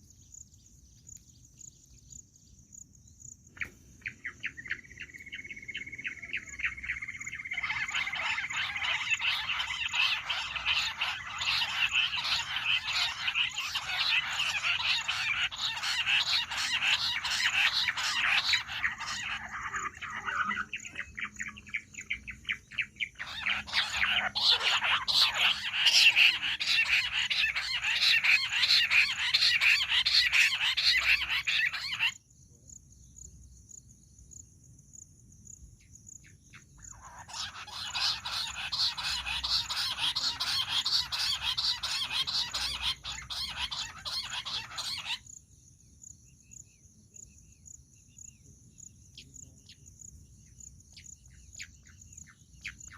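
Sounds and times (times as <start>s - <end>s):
quail chattering chirps: 3.5s - 32.2s, 36.3s - 45.3s.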